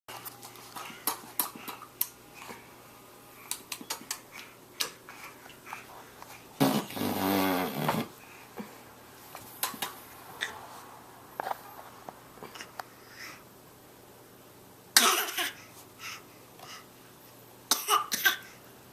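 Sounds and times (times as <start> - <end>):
tongue clicks: 3.5 - 5.0.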